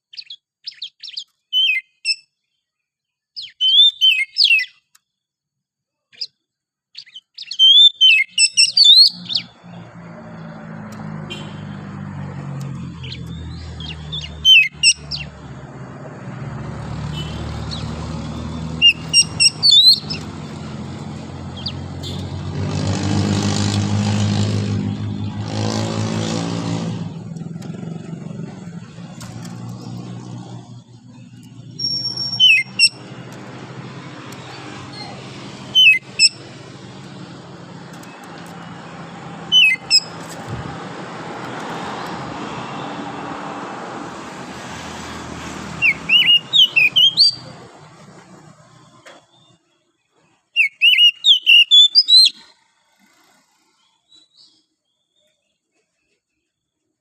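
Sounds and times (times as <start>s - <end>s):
bird singing chirping phrases: 0.0s - 2.3s, 3.4s - 4.9s, 7.0s - 9.8s, 12.6s - 15.8s, 16.9s - 22.5s, 27.1s - 33.4s, 34.0s - 40.4s, 45.7s - 47.7s, 50.6s - 52.5s
vehicle engine droning: 8.8s - 49.6s.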